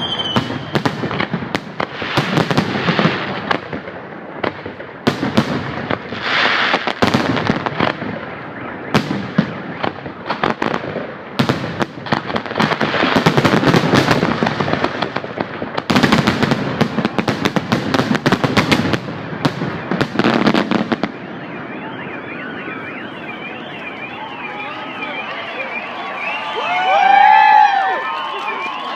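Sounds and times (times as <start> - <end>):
fireworks bangs and crackling: 0.0 - 28.9
warbling siren-like tone: 19.6 - 27.4.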